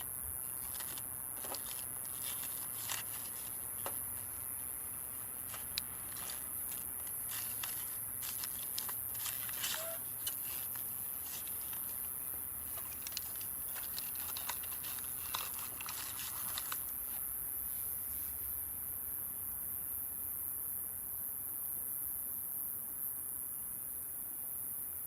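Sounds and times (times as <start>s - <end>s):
wood fire crackling: 0.0s - 17.2s.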